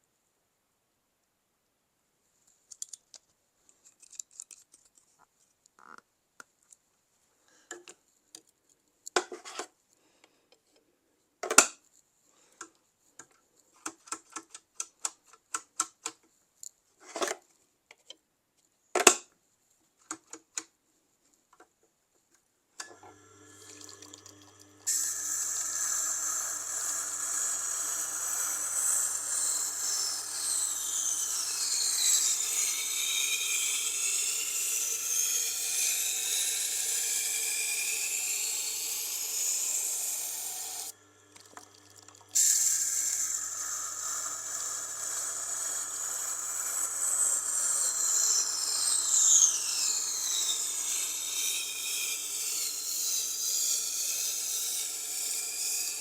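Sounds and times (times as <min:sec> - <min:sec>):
sharpening machine motor humming: 0:22.9 - 0:41.6, 0:42.2 - 0:56.0.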